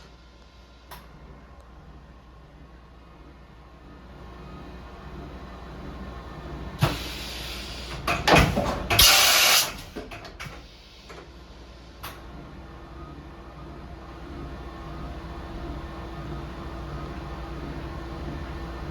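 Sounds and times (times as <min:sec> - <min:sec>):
machine low steady hum: 0:00.0 - 0:09.0, 0:09.7 - 0:18.9
loud hissing bursts: 0:09.0 - 0:09.8.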